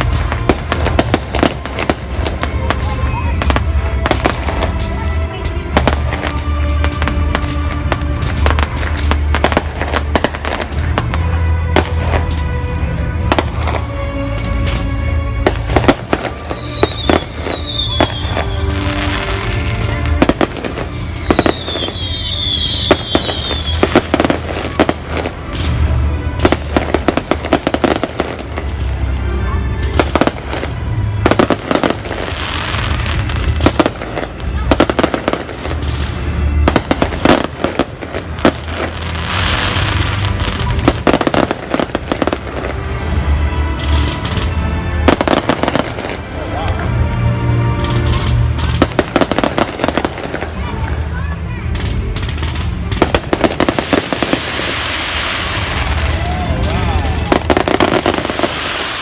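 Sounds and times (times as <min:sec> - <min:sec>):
fireworks bangs and crackles: 0:00.0 - 0:59.0
music playing: 0:00.0 - 0:59.0
falling firework whistles: 0:16.5 - 0:19.0, 0:20.9 - 0:24.2.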